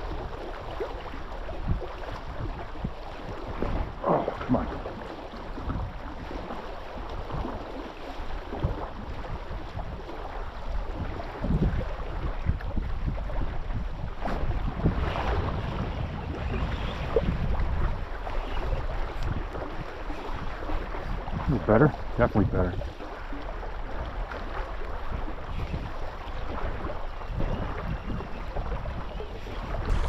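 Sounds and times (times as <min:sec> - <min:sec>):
water lapping against hull: 0:00.0 - 0:30.0
wind buffeting microphone: 0:00.0 - 0:30.0.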